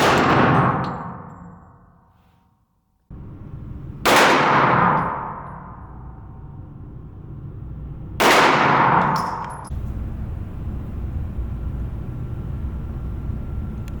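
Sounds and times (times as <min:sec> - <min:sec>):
pistol shot: 0:00.0 - 0:01.4, 0:04.0 - 0:05.7, 0:08.2 - 0:09.7
steady low rumble: 0:03.1 - 0:14.0.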